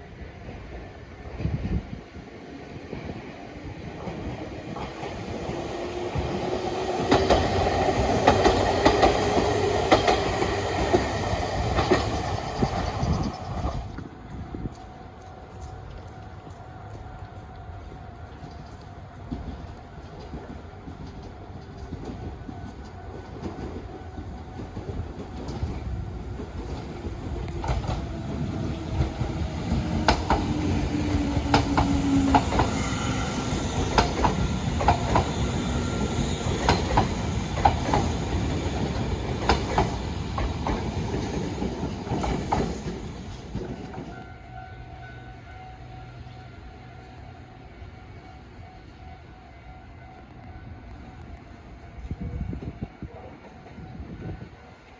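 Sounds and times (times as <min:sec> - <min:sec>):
electric train rumble: 0:00.0 - 0:54.9
wheels clacking over rail joints: 0:06.9 - 0:14.0, 0:18.3 - 0:32.8, 0:33.5 - 0:44.2.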